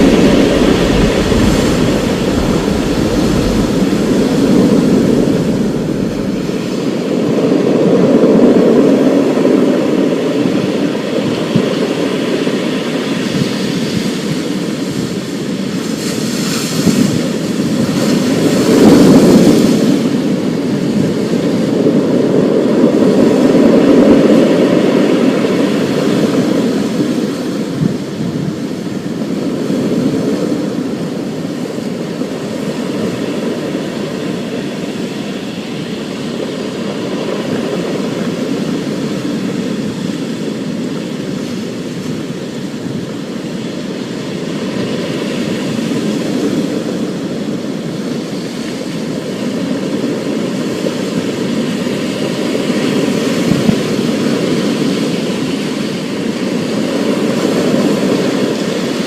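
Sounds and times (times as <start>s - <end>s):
heavy rain and storm: 0.0s - 59.0s.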